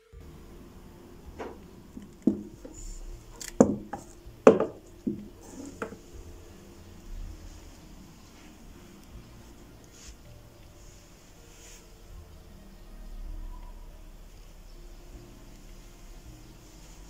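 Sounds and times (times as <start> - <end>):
irregular knocks: 1.3 - 6.4.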